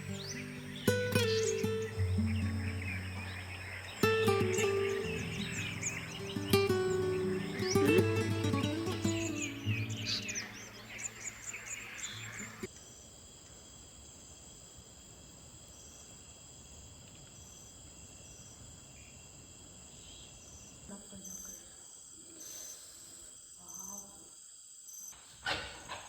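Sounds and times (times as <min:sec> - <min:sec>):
background music: 0:00.0 - 0:10.8
birds chirping: 0:00.0 - 0:13.1, 0:17.2 - 0:22.9
short pulsed insect calls: 0:00.0 - 0:25.4
crickets and night insects chorus: 0:00.0 - 0:26.0.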